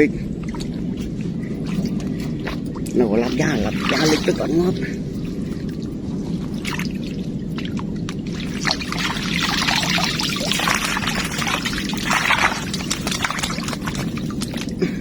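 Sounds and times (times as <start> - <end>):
steady low rumble: 0.0 - 15.0
water pouring and splashing: 0.4 - 15.0.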